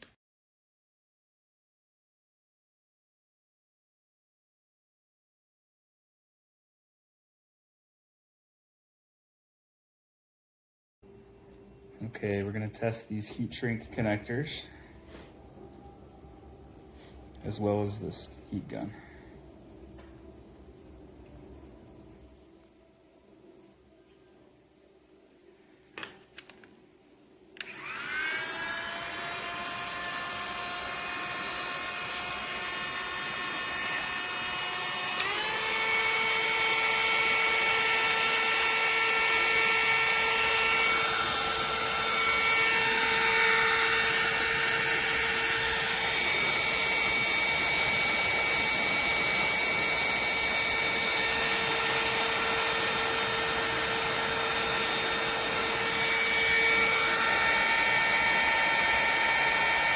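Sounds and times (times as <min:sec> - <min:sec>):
heat gun fan whine: 0:11.1 - 0:22.4, 0:27.5 - 0:59.9.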